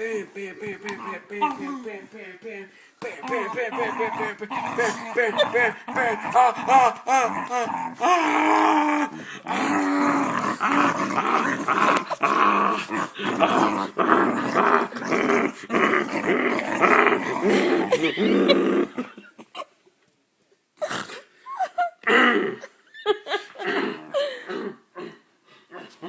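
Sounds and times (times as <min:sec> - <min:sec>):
dog growling in play: 0:03.4 - 0:19.2.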